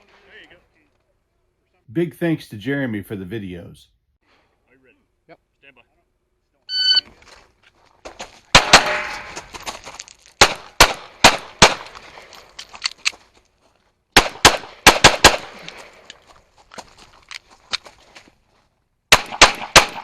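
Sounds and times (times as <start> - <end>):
pistol shots: 8.5 - 9.4, 10.4 - 12.2, 14.2 - 16.0, 19.1 - 20.0.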